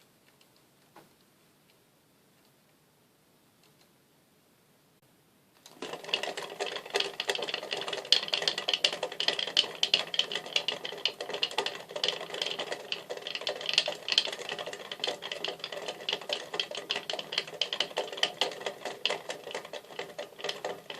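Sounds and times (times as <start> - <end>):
bicycle rollers clicking rattle: 5.7 - 20.9.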